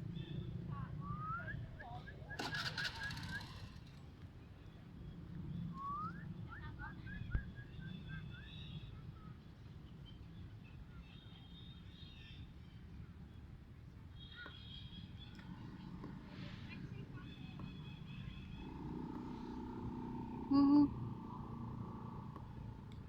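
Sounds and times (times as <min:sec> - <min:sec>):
bird calls: 0:00.0 - 0:03.9.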